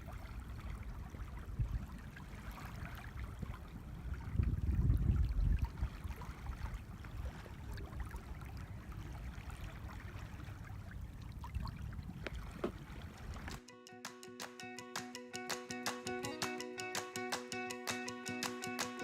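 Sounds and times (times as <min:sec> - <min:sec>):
wind rumbling on microphone: 0:00.0 - 0:13.6.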